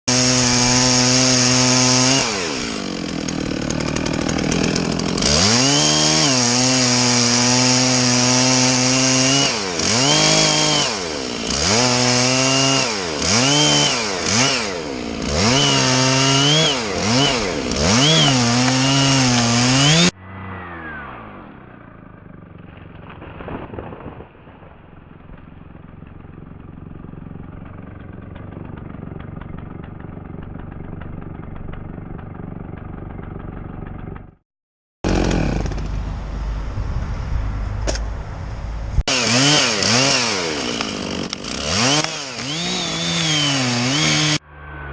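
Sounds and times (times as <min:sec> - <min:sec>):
chainsaw cutting at high revs: 0:00.1 - 0:22.5, 0:26.4 - 0:31.1, 0:31.9 - 0:34.2, 0:35.0 - 0:36.0, 0:39.0 - 0:44.4.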